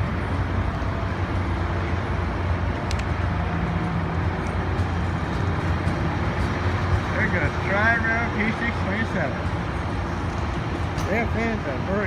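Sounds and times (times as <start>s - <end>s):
train rumbling: 0.0s - 12.0s.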